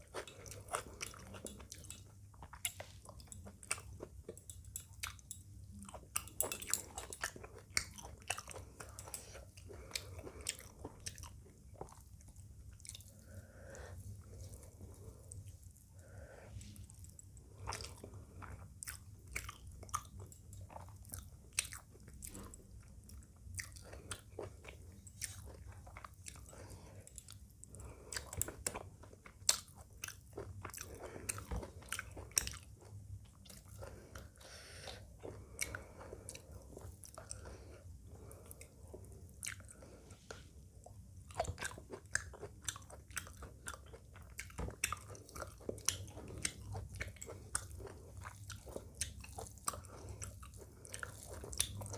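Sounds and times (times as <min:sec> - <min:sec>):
person chewing food: 0:00.0 - 0:51.9
food crunching: 0:41.0 - 0:51.9.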